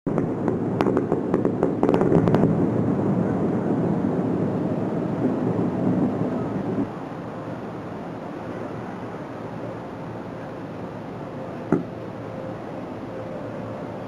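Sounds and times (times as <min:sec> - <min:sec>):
fireworks crackles: 0:00.1 - 0:02.7
fireworks booms rumble: 0:00.1 - 0:04.6.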